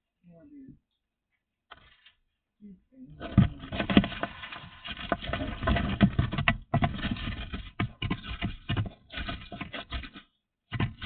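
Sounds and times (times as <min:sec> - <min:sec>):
small hard objects clattering: 0:03.2 - 0:11.0.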